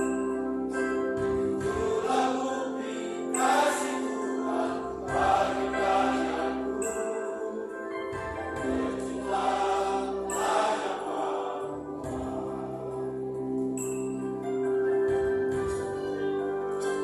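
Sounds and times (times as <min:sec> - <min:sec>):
choir singing in harmony: 0:01.6 - 0:14.0.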